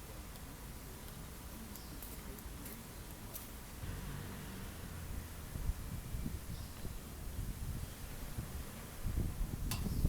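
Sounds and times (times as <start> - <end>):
wind buffeting microphone: 4.6 - 10.0.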